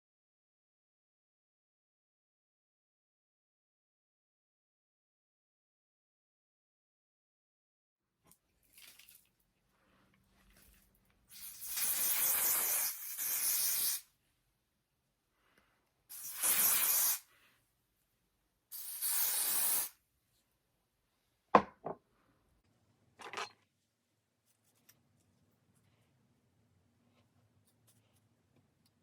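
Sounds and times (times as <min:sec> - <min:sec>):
hairspray hissing: 0:11.3 - 0:14.1, 0:16.1 - 0:17.3, 0:18.7 - 0:20.0.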